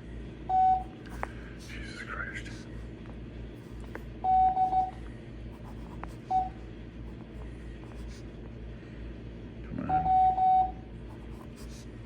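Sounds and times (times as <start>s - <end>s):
faint low hum: 0.0s - 12.0s
morse code beeps: 4.2s - 5.0s, 9.9s - 10.8s.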